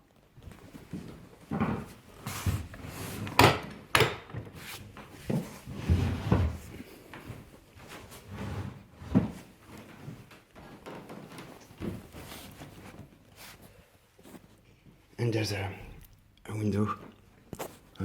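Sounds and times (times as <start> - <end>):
sofa bed knocks and thumps: 0.4 - 13.3.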